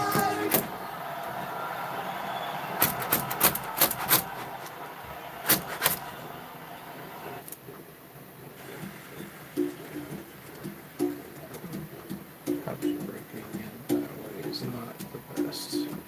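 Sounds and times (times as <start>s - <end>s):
sharp clicks: 2.8s - 4.8s, 5.4s - 6.2s
printer mechanical whir: 2.8s - 6.4s.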